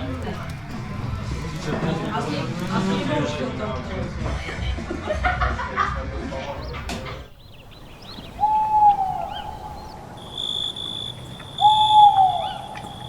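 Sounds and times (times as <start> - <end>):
drawn-out whistled calls: 6.5 - 13.0
faint bird chirps: 6.5 - 13.0
high insect-like buzz: 7.6 - 13.0.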